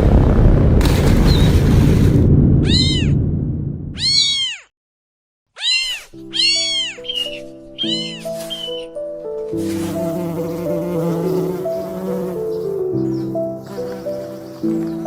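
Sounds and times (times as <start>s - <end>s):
low rumble: 0.0s - 4.1s
kitten meowing: 2.6s - 3.2s, 4.0s - 4.7s, 5.6s - 8.8s
soft music with held notes: 6.1s - 15.0s.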